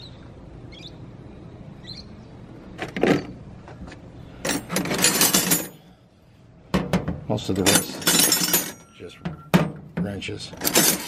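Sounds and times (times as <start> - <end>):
hand tools clattering: 4.4 - 5.8, 6.8 - 11.0
metal drawer sliding rattle: 10.6 - 11.0.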